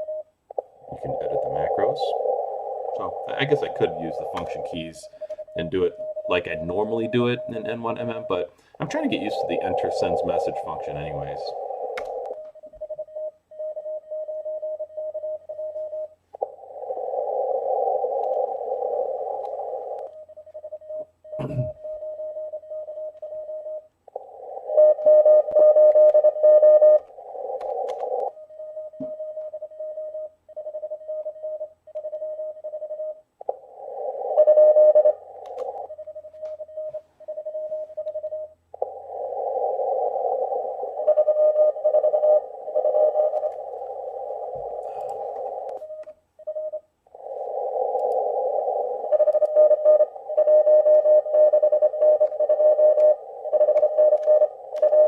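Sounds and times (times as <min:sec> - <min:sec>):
morse code tone: 0:00.0 - 0:16.2, 0:18.2 - 0:33.3, 0:34.1 - 0:38.6, 0:40.2 - 0:47.5, 0:48.1 - 0:55.0
radio band hiss: 0:00.8 - 0:12.0.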